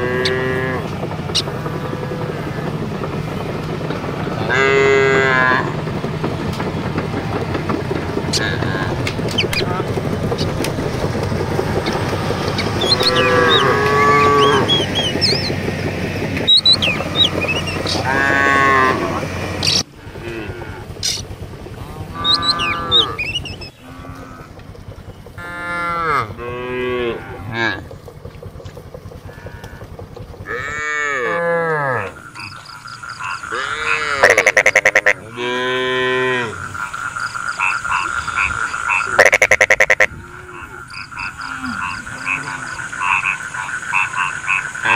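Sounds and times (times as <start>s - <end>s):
cattle mooing: 0.0s - 5.8s, 8.2s - 15.6s, 16.3s - 21.2s, 21.8s - 24.7s, 25.4s - 28.1s, 29.2s - 44.9s
low rumbling noise: 0.0s - 44.9s.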